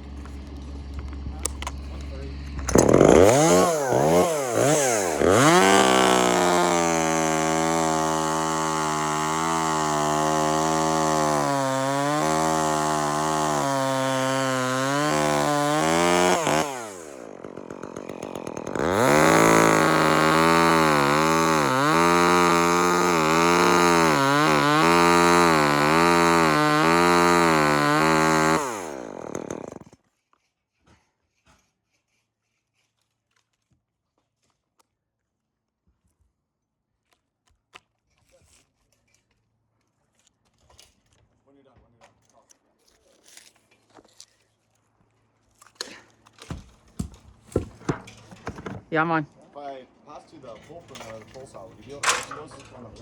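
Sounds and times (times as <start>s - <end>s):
chainsaw revving: 0.0s - 30.0s, 47.5s - 49.2s, 50.6s - 52.7s.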